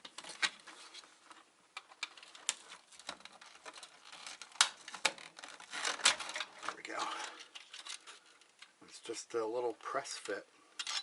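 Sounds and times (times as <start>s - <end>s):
plastic and metal clicking and scraping: 0.0s - 8.8s
sharp plastic snaps: 1.7s - 8.8s.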